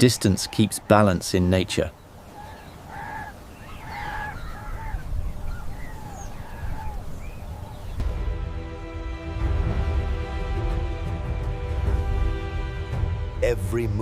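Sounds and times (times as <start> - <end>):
short arched animal calls: 2.3 - 7.2
music: 8.0 - 14.0.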